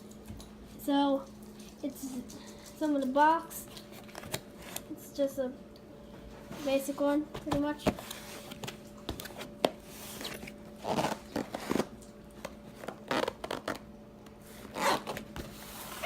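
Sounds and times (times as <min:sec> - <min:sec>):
faint steady hum: 0:00.0 - 0:16.0
cardboard flaps scraping and rustling: 0:07.5 - 0:11.9, 0:14.5 - 0:16.0.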